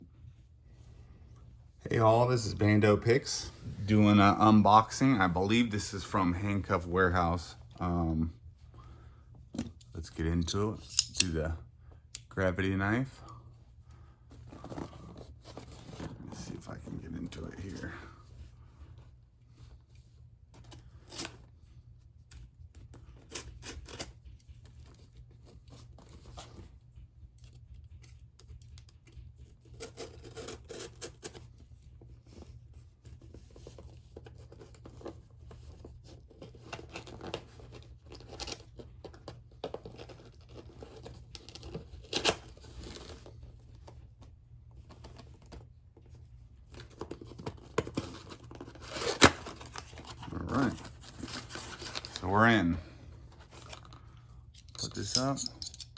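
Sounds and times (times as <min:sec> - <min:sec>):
cardboard scratching and crinkling: 0:14.4 - 0:18.2, 0:19.5 - 0:54.0
packing tape tearing: 0:46.8 - 0:52.2.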